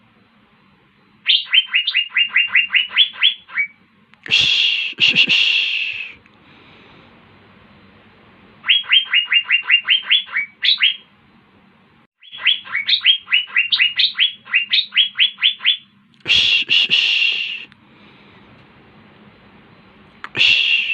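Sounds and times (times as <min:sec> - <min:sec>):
bird singing clear notes: 0:01.2 - 0:03.8, 0:08.6 - 0:11.1, 0:12.2 - 0:15.9
loud harsh sound: 0:04.3 - 0:06.2, 0:16.3 - 0:17.7, 0:20.3 - 0:20.9.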